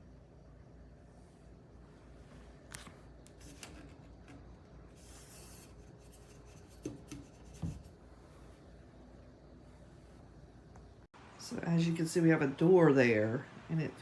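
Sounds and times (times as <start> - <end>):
faint rubbing and handling: 1.2 - 10.4.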